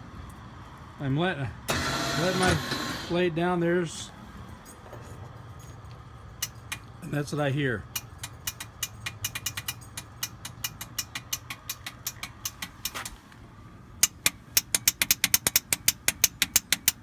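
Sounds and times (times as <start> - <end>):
winch solenoid clicking rapidly: 1.7 - 3.2, 7.9 - 13.2, 14.0 - 17.0.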